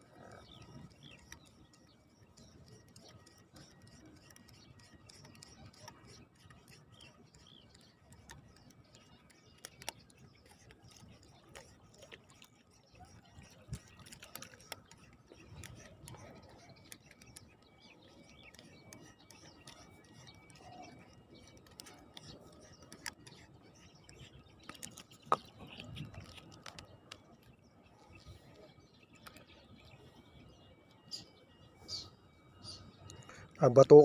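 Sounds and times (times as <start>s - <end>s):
faint high bird chirps: 0.0s - 34.0s
sharp clicks and ticks: 0.4s - 27.6s.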